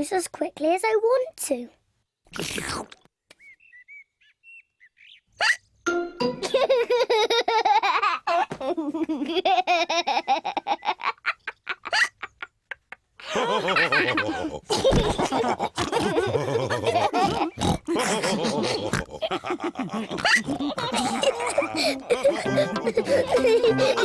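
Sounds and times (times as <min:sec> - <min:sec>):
cartoon characters laughing: 0:06.2 - 0:12.5, 0:13.2 - 0:24.0.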